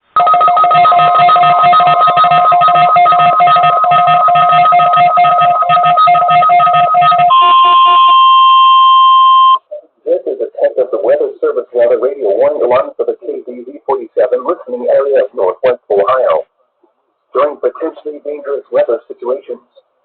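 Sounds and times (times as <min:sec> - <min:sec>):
two high tones over rhythmic pattern: 0:00.2 - 0:09.6
steady high-pitched alarm tone: 0:00.2 - 0:09.7.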